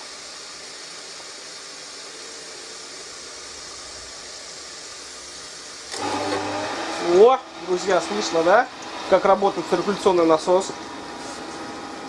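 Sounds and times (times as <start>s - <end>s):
dishwasher water filling hiss: 0.0s - 12.0s.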